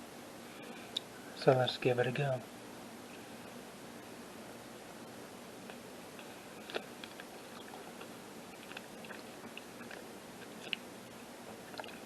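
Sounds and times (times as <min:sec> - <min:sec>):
wet mouth clicks chewing: 0:06.6 - 0:10.9, 0:11.7 - 0:12.0.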